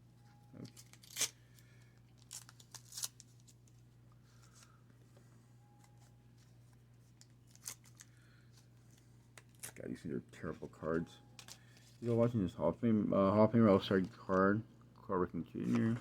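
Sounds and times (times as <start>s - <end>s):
low steady hum: 0.0s - 16.0s
paper crinkling and rustling: 0.6s - 4.8s, 5.8s - 12.4s.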